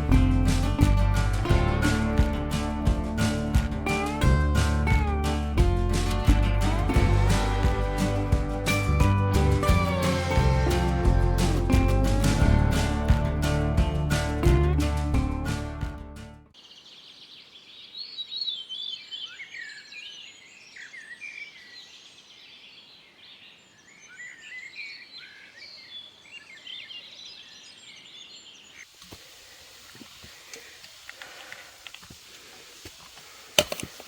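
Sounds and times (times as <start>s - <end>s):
songbirds singing: 16.6s - 28.9s
faint steady hiss: 21.8s - 34.0s.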